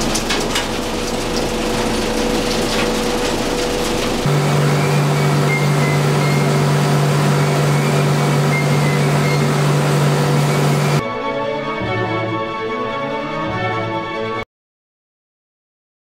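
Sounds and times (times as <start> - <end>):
low machine hum: 0.0 - 11.0
machinery rushing noise: 0.0 - 11.0
music: 10.4 - 14.5.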